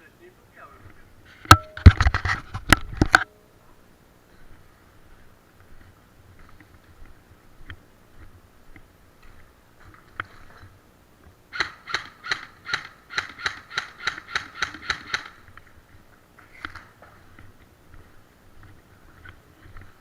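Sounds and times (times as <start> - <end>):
airsoft gun firing single shots: 11.5 - 15.4.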